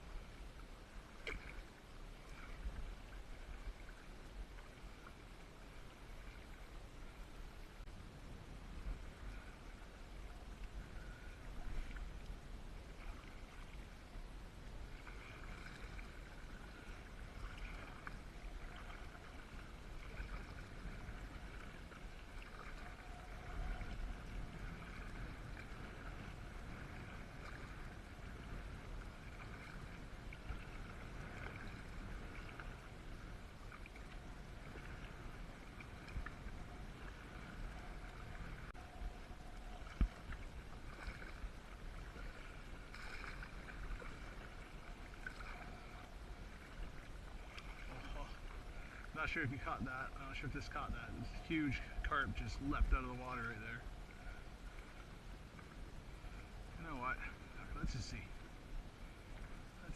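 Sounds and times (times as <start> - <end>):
paddle splashing: 0.0 - 8.0, 8.7 - 59.9
steady low rumble: 0.0 - 22.3.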